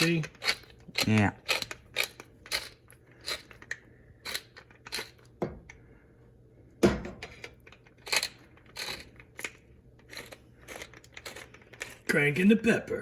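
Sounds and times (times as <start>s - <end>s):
pepper mill grinding: 0.0s - 5.3s, 7.3s - 12.1s.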